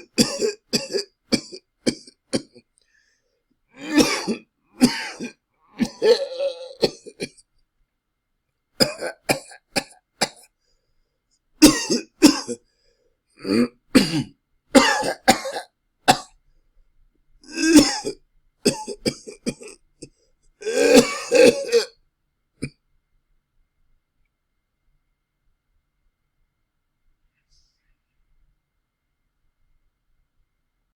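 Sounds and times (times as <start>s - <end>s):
person coughing harshly: 0.0s - 2.6s, 3.8s - 7.4s, 8.8s - 10.4s, 11.6s - 12.6s, 13.4s - 16.3s, 17.5s - 19.8s, 20.6s - 22.0s.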